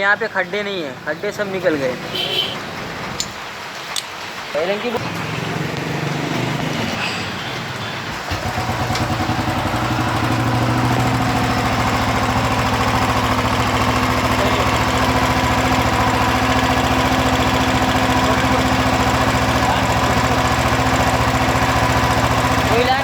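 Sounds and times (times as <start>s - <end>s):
motorcycle engine starting and idling: 5.0s - 23.0s.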